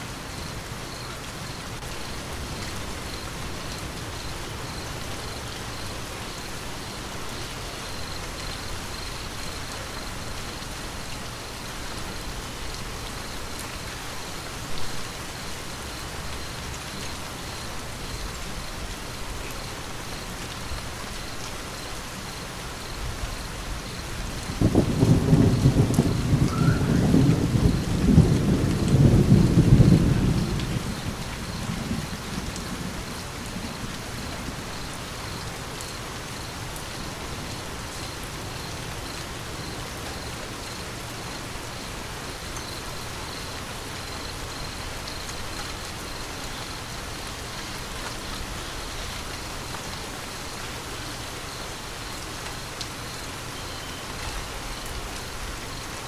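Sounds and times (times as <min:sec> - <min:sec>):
steady rain falling: 0:00.0 - 0:56.0
thunder rumbling: 0:24.0 - 0:35.0.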